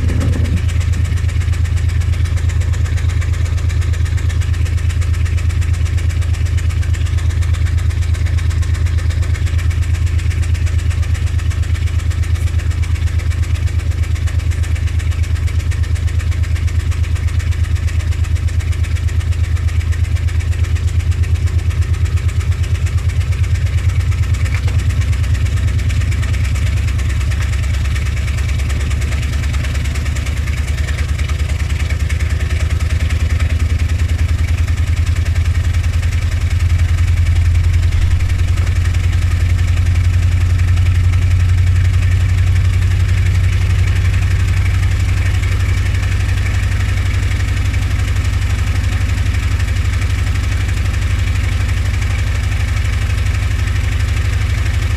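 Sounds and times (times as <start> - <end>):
washing machine spinning: 0.0 - 7.0.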